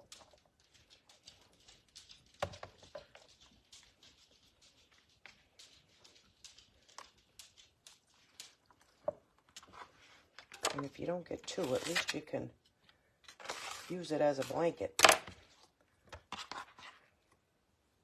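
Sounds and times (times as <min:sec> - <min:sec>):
soft clicks and rustles of hands: 0:00.0 - 0:10.6.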